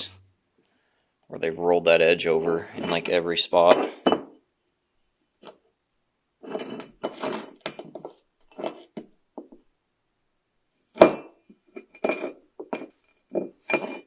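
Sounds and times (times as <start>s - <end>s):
metal parts clattering: 6.5s - 8.8s.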